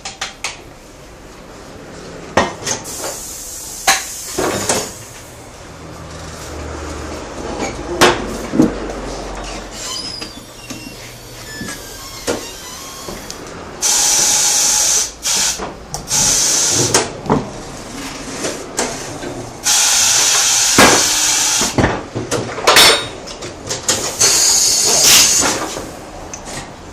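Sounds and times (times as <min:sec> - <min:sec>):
compressed air hissing: 0:02.8 - 0:05.1, 0:11.0 - 0:17.1, 0:19.6 - 0:21.8.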